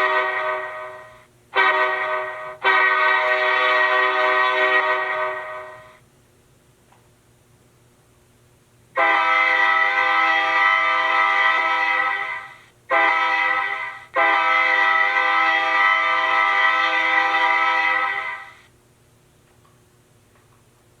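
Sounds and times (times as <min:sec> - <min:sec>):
air horn blasts from small speaker: 0:00.0 - 0:06.0, 0:09.0 - 0:18.5.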